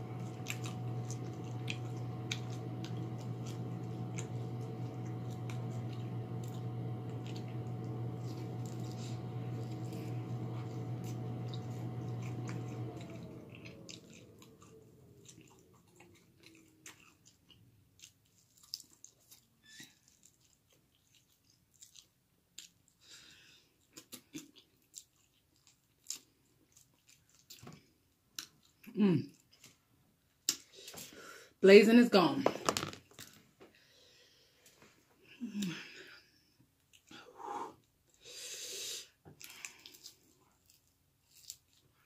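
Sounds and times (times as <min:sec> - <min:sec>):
motor humming: 0:00.0 - 0:15.8
chewing chicken wings: 0:00.0 - 0:29.8, 0:39.3 - 0:42.0.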